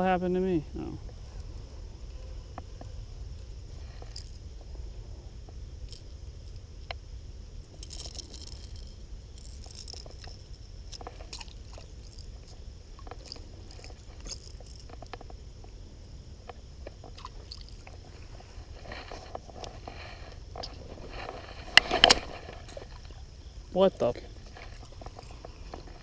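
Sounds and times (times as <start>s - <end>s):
crunchy scrapes: 7.7s - 15.3s, 16.8s - 23.3s, 24.0s - 26.0s.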